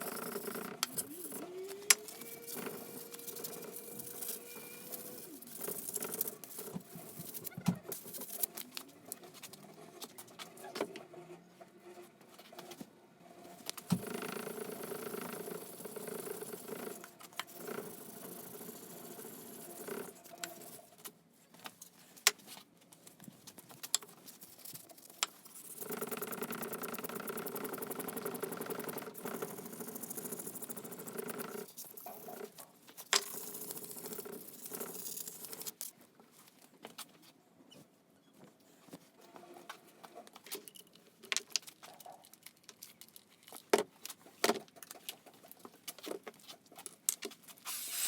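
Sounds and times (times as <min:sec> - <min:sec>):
clicks and handling noises: 0:39.6 - 0:47.8.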